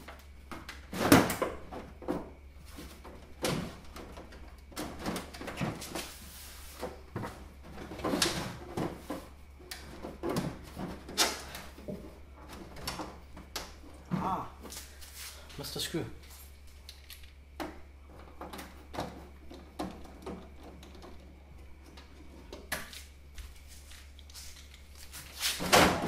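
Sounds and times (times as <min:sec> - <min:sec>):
plastic cover knocking and creaking: 0:06.8 - 0:14.4, 0:17.6 - 0:22.8.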